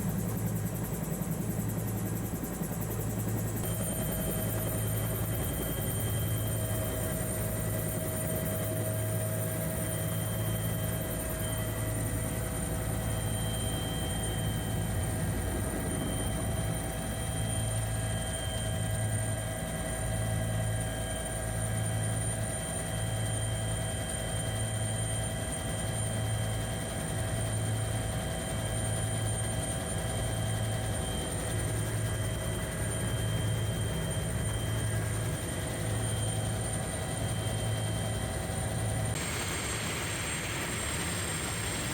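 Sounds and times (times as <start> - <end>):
pulsing low hum: 0.0 - 20.6
helicopter rotor and turbines drone: 0.0 - 41.9
steady high whines: 1.4 - 25.1, 25.9 - 41.9.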